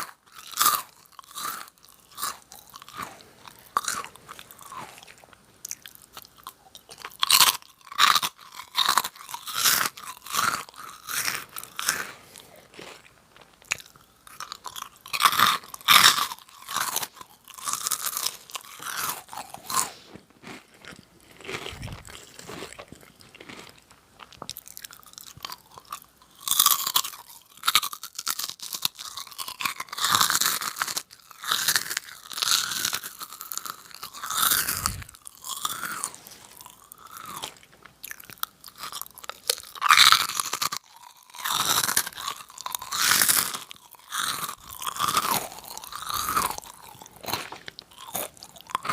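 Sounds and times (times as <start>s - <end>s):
crunching and chewing crackers: 0.0s - 48.9s.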